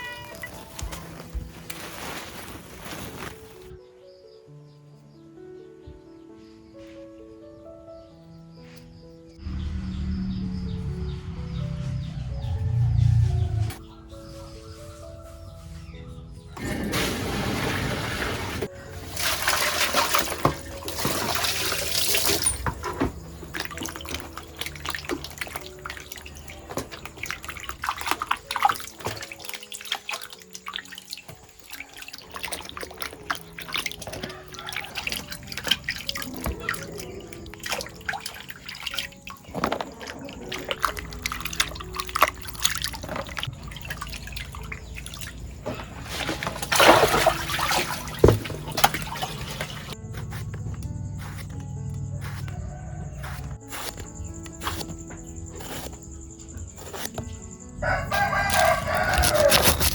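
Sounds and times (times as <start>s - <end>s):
water dripping: 0.0s - 3.7s, 16.6s - 50.0s, 57.8s - 59.9s
water running and splashing: 0.0s - 3.8s, 16.6s - 50.0s, 57.8s - 59.9s
faint background music: 0.0s - 59.9s.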